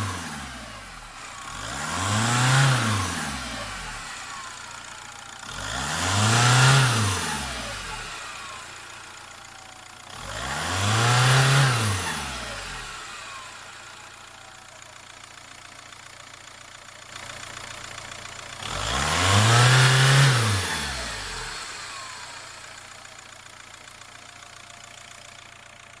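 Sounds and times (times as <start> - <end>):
diesel engine revving: 0.0 - 14.0, 18.5 - 23.2.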